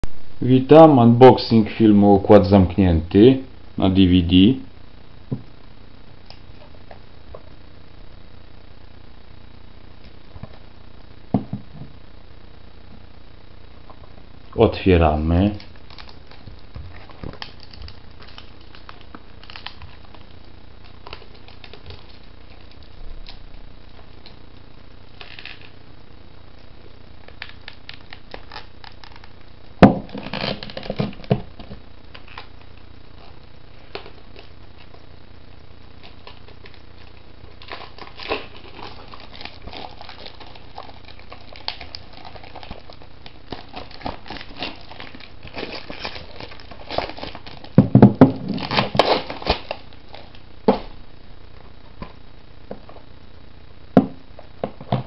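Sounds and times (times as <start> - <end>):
plastic wrap crinkling: 13.8 - 25.8, 27.2 - 35.1, 35.9 - 51.0.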